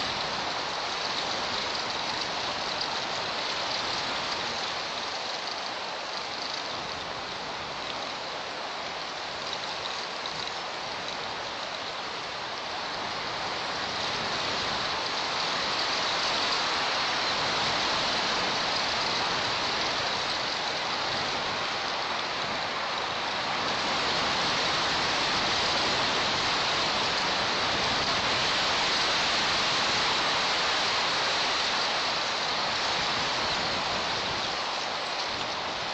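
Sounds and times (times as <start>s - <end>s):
strong wind on microphone: 12.4s - 35.9s.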